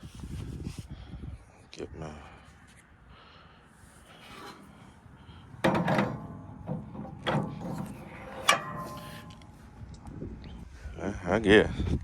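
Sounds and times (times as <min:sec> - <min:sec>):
metal tools clattering: 0:05.6 - 0:10.0.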